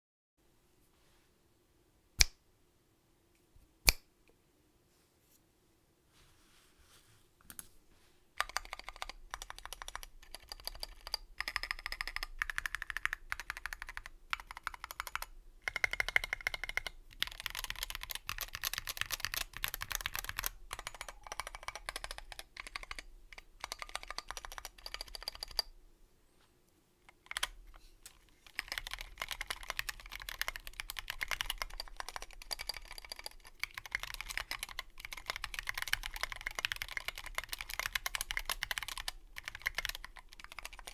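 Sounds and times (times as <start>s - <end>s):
mechanical keyboard typing: 8.4s - 25.7s, 27.1s - 40.9s.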